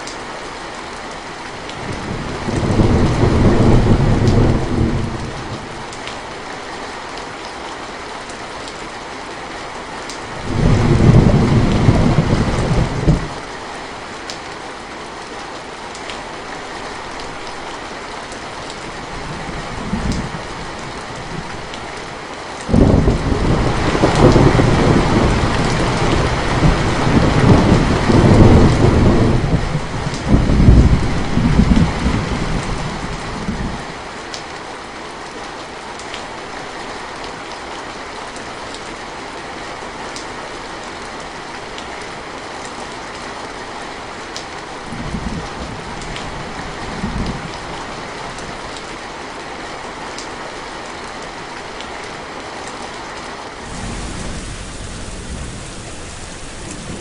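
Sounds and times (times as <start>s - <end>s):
steady rain: 0.0s - 57.0s
thunder rumbling: 1.8s - 5.8s, 10.4s - 13.4s, 22.7s - 32.7s, 53.6s - 57.0s.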